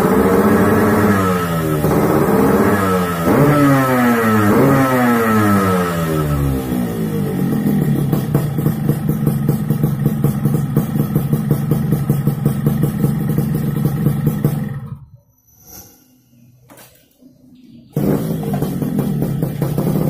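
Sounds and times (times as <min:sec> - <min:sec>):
motorcycle engine idling: 0:05.7 - 0:15.0, 0:17.9 - 0:20.0.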